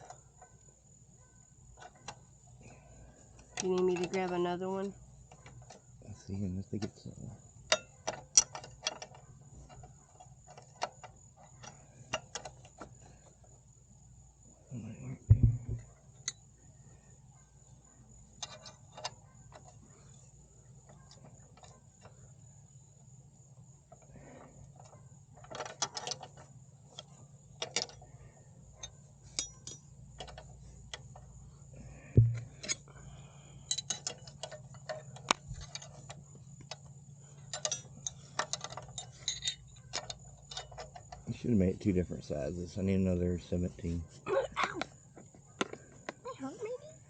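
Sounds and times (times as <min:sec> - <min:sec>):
metallic clicks of hand tools: 0:28.8 - 0:31.2, 0:33.6 - 0:36.9, 0:37.5 - 0:41.2.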